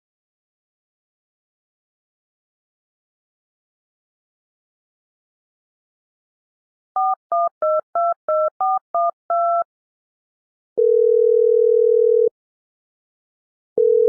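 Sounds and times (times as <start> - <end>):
telephone ringback tone: 7.0 - 9.6, 10.8 - 12.4, 13.8 - 14.0
touch-tone keypad beeps: 7.0 - 9.7.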